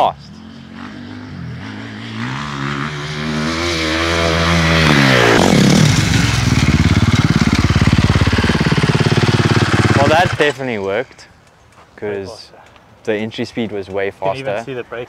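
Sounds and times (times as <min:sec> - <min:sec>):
motocross bike engine revving: 0:00.2 - 0:10.6.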